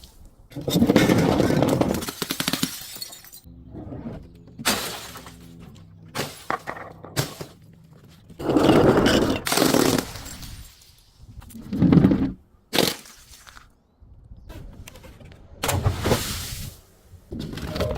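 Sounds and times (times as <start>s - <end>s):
glass bottles smashing: 0.8s - 3.5s, 4.6s - 7.6s, 9.1s - 10.9s.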